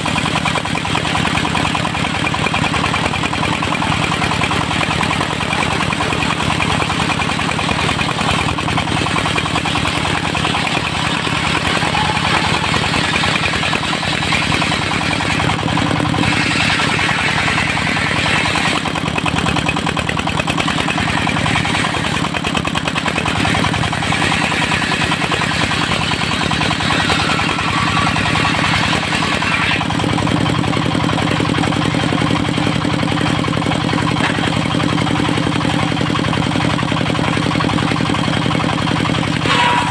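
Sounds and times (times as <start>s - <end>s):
sawmill engine hum: 0.0s - 39.9s.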